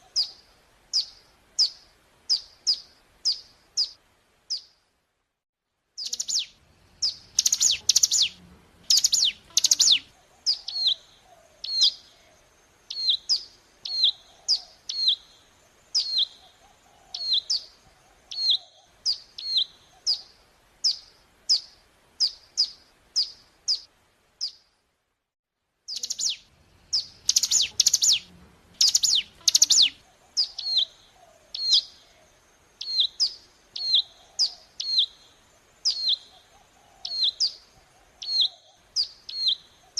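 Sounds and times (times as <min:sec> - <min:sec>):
bird singing sharp high chips: 0:06.0 - 0:11.0, 0:25.9 - 0:30.9.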